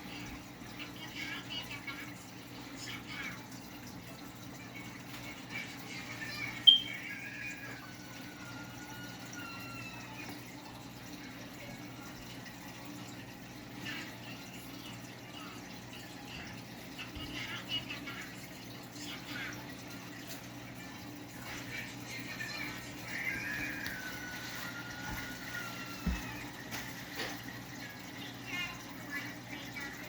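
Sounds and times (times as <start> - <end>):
aquarium water trickling: 0.0 - 30.0.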